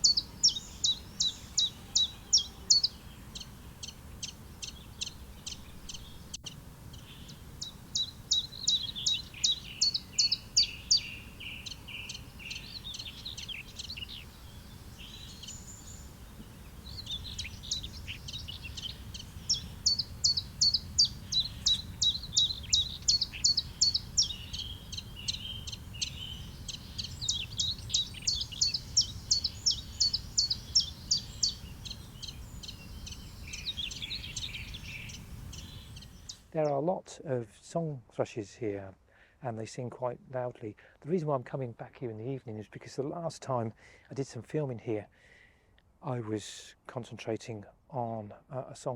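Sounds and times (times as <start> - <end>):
bird warbling: 0.0 - 36.5
songbirds repeating high notes: 0.0 - 36.9.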